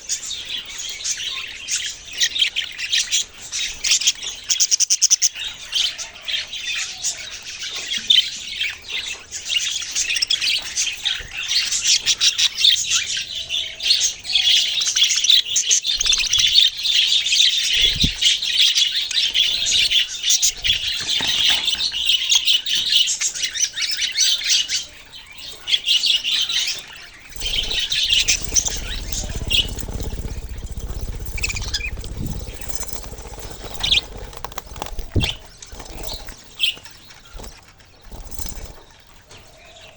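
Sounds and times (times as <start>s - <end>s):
parrots chirping and chattering: 0.1s - 39.9s
low rumble: 27.5s - 35.9s.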